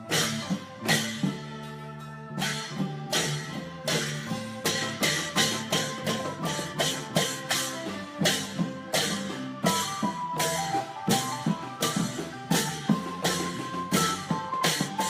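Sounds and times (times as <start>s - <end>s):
held melodic line: 0.0s - 15.0s
long drums beating: 0.0s - 15.0s.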